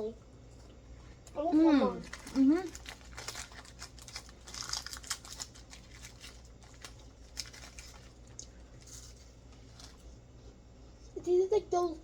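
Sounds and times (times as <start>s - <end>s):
plastic wrapper crinkling: 2.0s - 10.0s.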